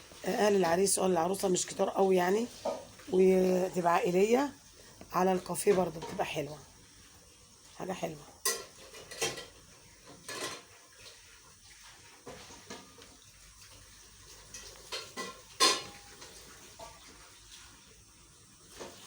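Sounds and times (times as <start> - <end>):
cups plates and cutlery clinking: 8.4 - 10.7, 14.4 - 17.0.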